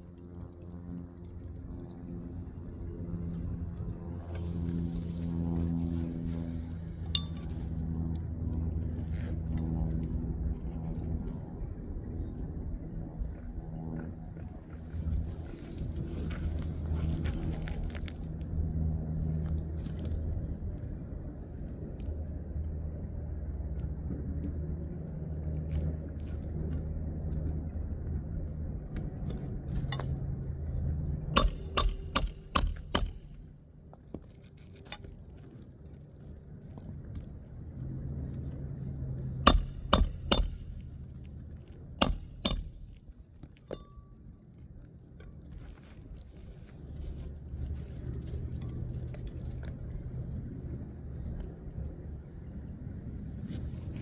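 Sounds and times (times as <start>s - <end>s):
hammer striking roofing nails: 31.4s - 33.4s, 39.5s - 41.0s, 42.0s - 43.0s.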